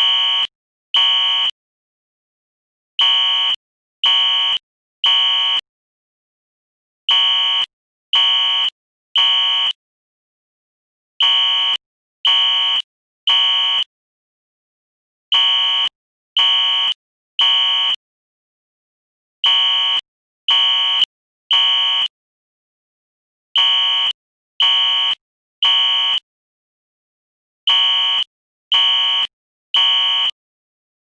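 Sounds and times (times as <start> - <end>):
fire alarm horn buzzing: 0.0 - 1.6, 3.0 - 5.6, 7.1 - 9.8, 11.2 - 13.9, 15.3 - 18.0, 19.4 - 22.1, 23.6 - 26.2, 27.7 - 30.4.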